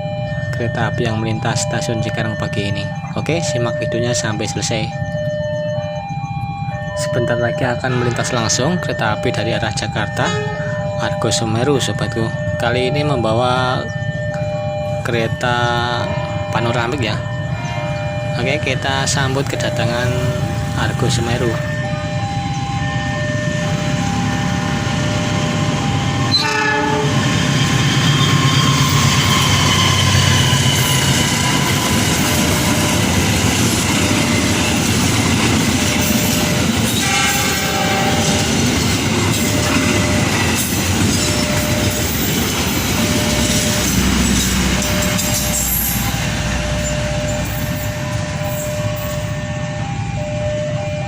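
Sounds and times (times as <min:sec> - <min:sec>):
train horn: 0:10.2 - 0:10.8, 0:17.6 - 0:18.1, 0:26.2 - 0:32.6, 0:36.9 - 0:38.6
train wheels clattering on rails: 0:27.2 - 0:48.9.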